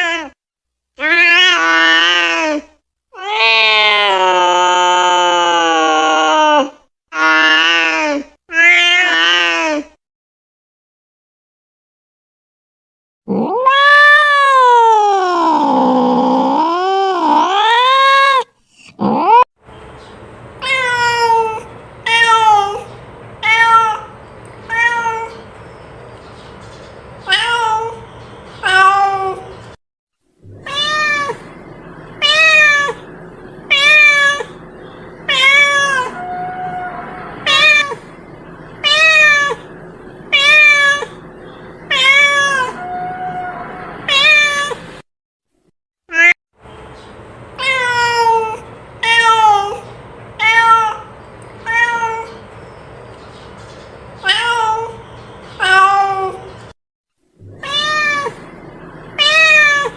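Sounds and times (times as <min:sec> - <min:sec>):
cat meowing: 0:01.0 - 0:02.6, 0:03.2 - 0:07.9, 0:08.5 - 0:09.8, 0:13.3 - 0:18.4, 0:20.6 - 0:25.4, 0:27.2 - 0:28.0, 0:28.6 - 0:29.5, 0:30.5 - 0:31.6, 0:32.2 - 0:33.0, 0:33.7 - 0:34.6, 0:35.3 - 0:38.1, 0:38.8 - 0:39.7, 0:40.3 - 0:41.2, 0:41.9 - 0:44.8, 0:46.1 - 0:46.4, 0:47.6 - 0:52.4, 0:54.2 - 0:55.0, 0:55.6 - 0:56.5, 0:57.4 - 0:58.5, 0:59.2 - 0:59.9.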